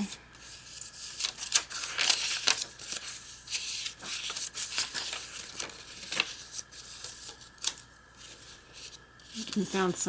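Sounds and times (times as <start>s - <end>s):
paper pages rustling: 0.0s - 10.0s.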